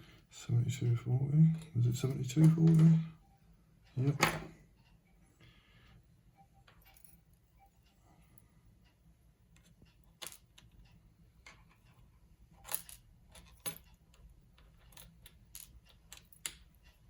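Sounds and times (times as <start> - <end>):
small metal lock parts clicking: 12.5 - 16.7.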